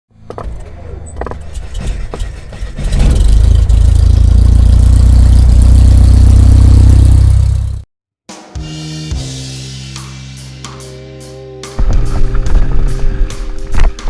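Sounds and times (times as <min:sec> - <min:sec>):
low engine hum: 0:00.2 - 0:07.8.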